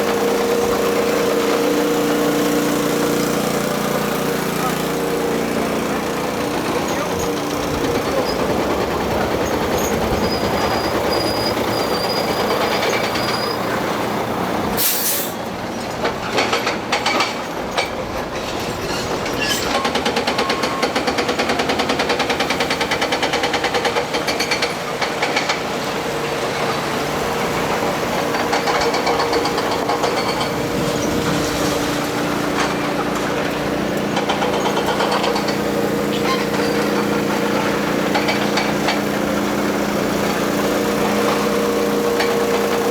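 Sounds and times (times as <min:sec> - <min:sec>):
excavator engine under load: 0:00.0 - 0:42.9
short sharp hiss: 0:14.8 - 0:15.4
metal clanks and knocks: 0:32.5 - 0:39.2.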